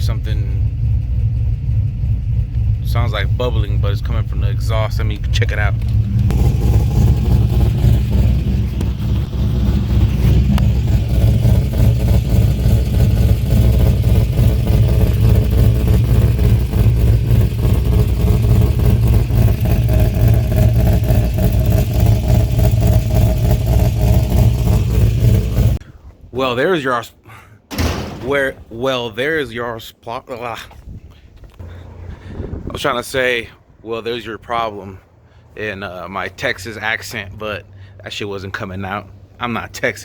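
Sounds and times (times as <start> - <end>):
car engine idling with uneven rumble: 0.0 - 25.8
exhaust bubbling: 0.0 - 25.9.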